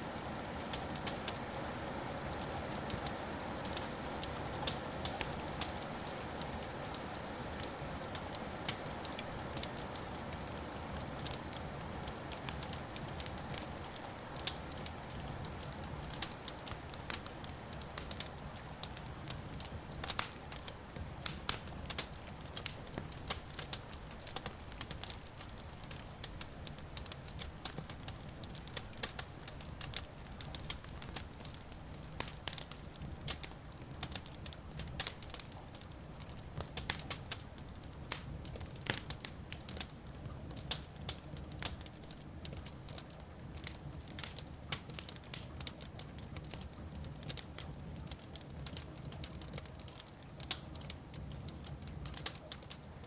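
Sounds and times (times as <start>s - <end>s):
wood fire crackling: 0.0s - 53.0s
sharp pops and snaps: 11.2s - 52.8s.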